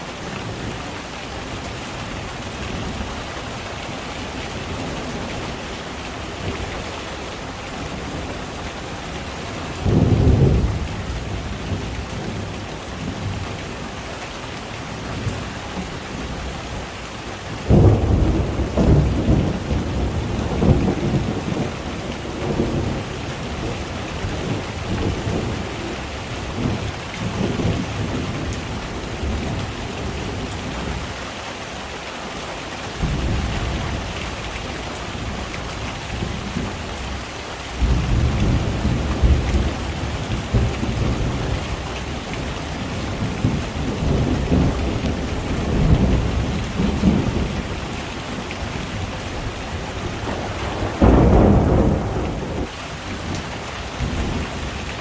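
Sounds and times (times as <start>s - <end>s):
heavy rain falling: 0.0s - 55.0s
thunder rumbling: 9.6s - 13.4s, 17.7s - 31.1s, 37.8s - 53.4s.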